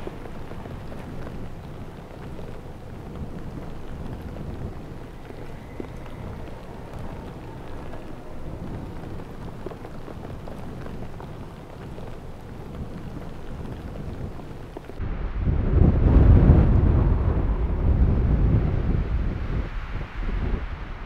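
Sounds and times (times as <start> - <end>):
fine crackling: 0.0 - 15.2
snowstorm wind rushing: 0.0 - 21.0.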